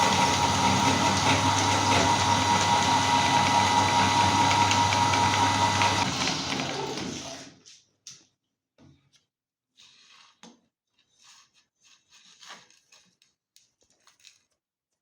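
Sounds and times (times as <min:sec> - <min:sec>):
small objects scraping and rustling: 0:09.8 - 0:10.4, 0:11.0 - 0:14.6.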